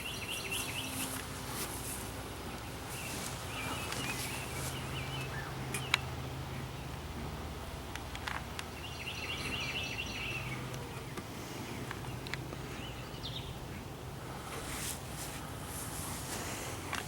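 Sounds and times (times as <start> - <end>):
bird chirping: 0.0 - 7.0, 8.6 - 13.9
steady low hum: 0.0 - 17.0.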